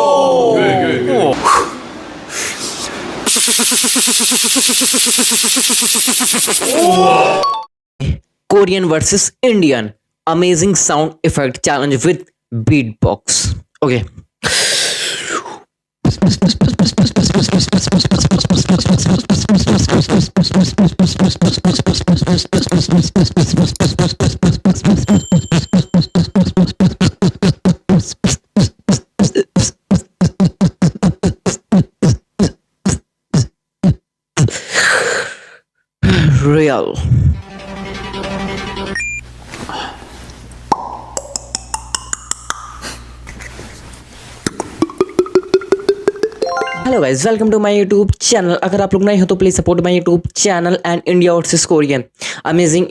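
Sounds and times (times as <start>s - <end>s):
beatboxing drum and scratch strokes: 3.3s - 7.0s, 16.0s - 34.6s, 44.4s - 46.4s
held music tone: 37.4s - 39.2s, 46.4s - 47.3s.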